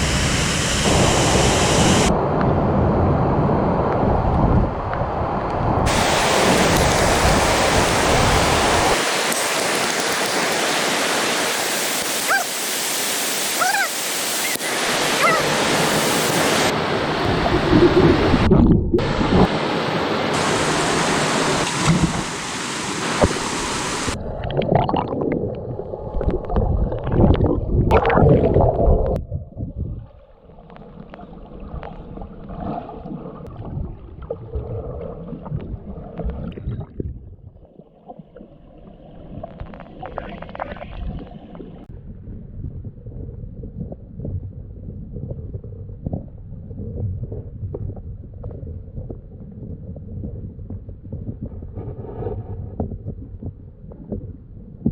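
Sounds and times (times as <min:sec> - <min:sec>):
waterfall roaring: 0:00.0 - 0:02.1, 0:05.9 - 0:17.6, 0:19.0 - 0:24.2.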